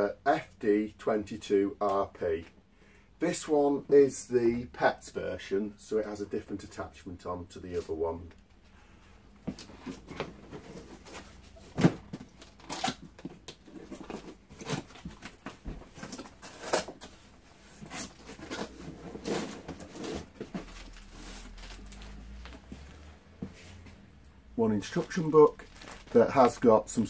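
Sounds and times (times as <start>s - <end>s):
cardboard and plastic rustling: 9.4s - 23.9s, 24.8s - 27.0s.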